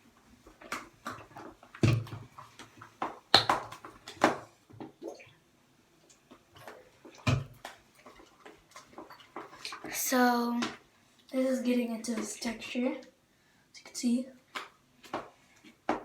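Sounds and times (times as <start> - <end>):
wet slime squelches: 6.1 - 12.8.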